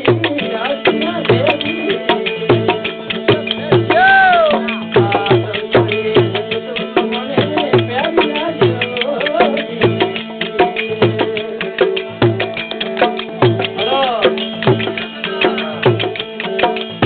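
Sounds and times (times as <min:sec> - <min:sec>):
hand drum beat: 0:00.0 - 0:17.0.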